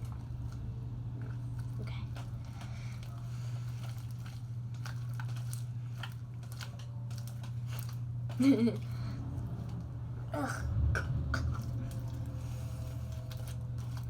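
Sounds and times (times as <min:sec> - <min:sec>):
wet clicks and crackles: 0:00.0 - 0:08.9
steady low hum: 0:00.0 - 0:14.0.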